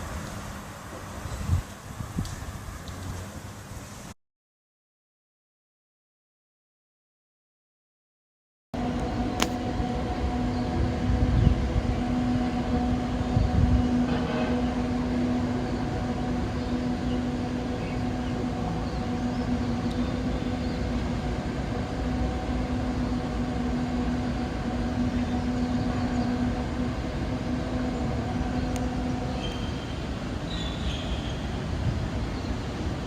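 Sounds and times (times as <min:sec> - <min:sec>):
low droning hum: 0:08.8 - 0:30.8.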